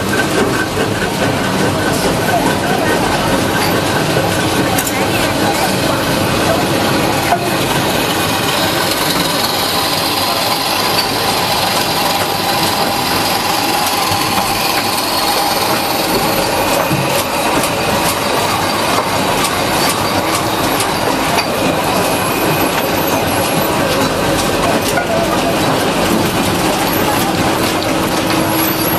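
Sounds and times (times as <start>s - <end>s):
machinery whining: 0.0s - 28.9s
sharp clicks and knocks: 3.3s - 28.9s.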